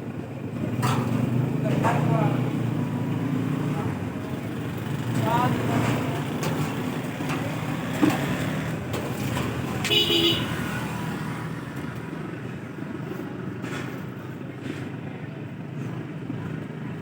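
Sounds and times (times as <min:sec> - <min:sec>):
road traffic: 0:00.0 - 0:17.0
vehicle horn toot: 0:09.8 - 0:10.7.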